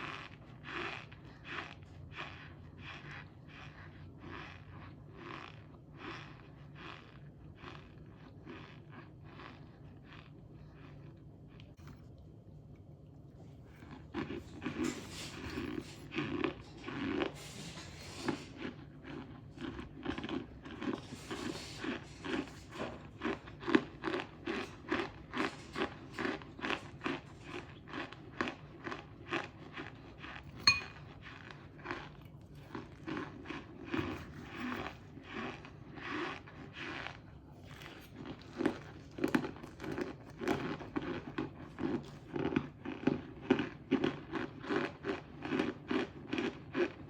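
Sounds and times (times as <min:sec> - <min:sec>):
crunchy chewing: 0:00.0 - 0:12.9, 0:13.5 - 0:47.0
sharp ringing click: 0:30.7 - 0:31.0.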